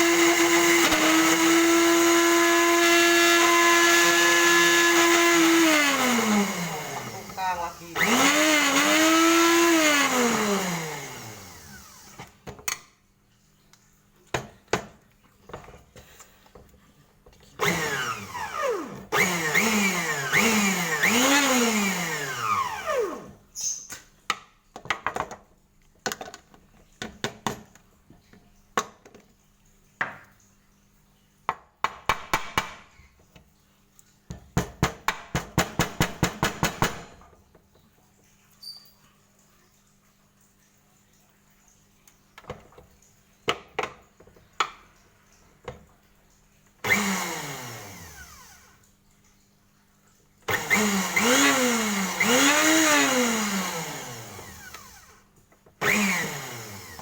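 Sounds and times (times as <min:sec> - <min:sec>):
power tool motor whine: 0:00.0 - 0:12.3, 0:17.6 - 0:23.4, 0:46.8 - 0:48.8, 0:50.5 - 0:55.2, 0:55.8 - 0:57.0.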